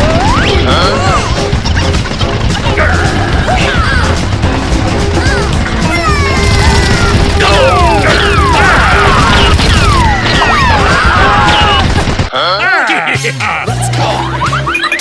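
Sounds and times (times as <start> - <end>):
music: 0.0 - 15.0
heavy low rumble: 1.0 - 12.3.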